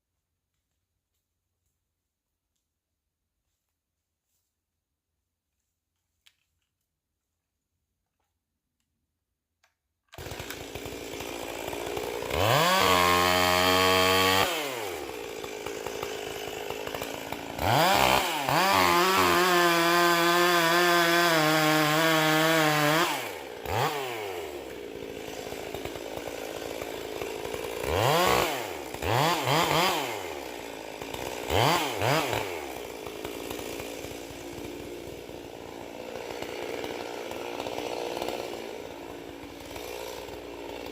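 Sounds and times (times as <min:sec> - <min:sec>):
chainsaw revving: 0:10.1 - 0:40.9.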